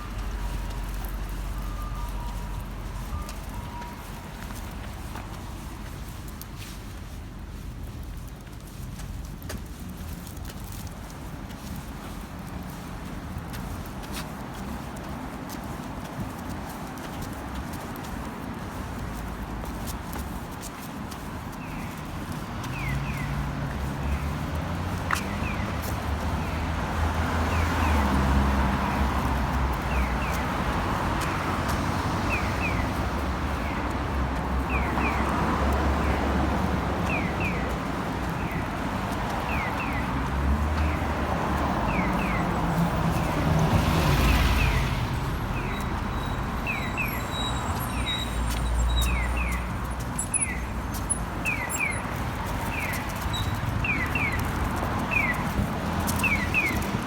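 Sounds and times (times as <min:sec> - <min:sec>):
traffic rumble: 0:00.0 - 0:57.0
car passing: 0:22.6 - 0:57.0.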